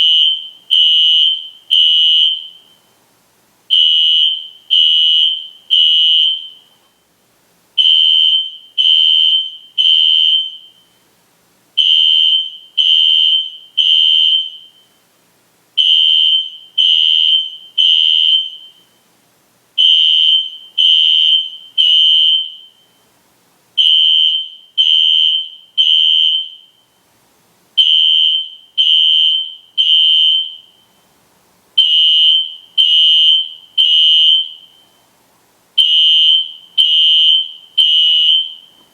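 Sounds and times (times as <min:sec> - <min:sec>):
fire alarm horn blasts: 0:00.0 - 0:02.8, 0:03.7 - 0:06.7, 0:07.8 - 0:11.0, 0:11.8 - 0:14.9, 0:15.8 - 0:19.0, 0:19.8 - 0:23.0, 0:23.8 - 0:26.9, 0:27.8 - 0:30.9, 0:31.8 - 0:35.0, 0:35.8 - 0:38.8.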